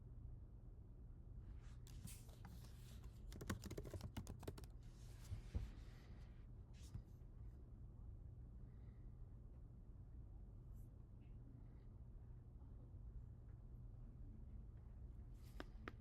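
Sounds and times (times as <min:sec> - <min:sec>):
computer keyboard typing: 0:03.2 - 0:04.7.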